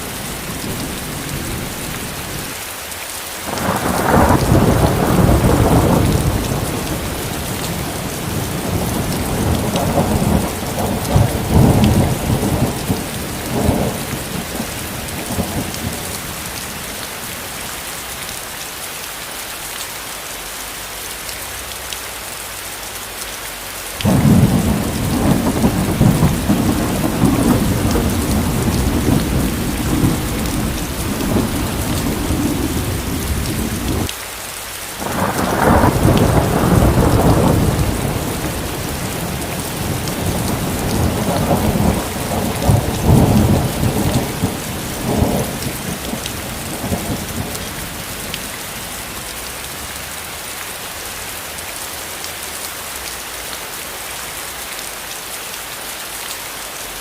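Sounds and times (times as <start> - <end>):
heavy rain hissing: 0.0 - 57.0
thunder rumbling: 3.5 - 16.9, 24.0 - 34.1, 35.0 - 49.6.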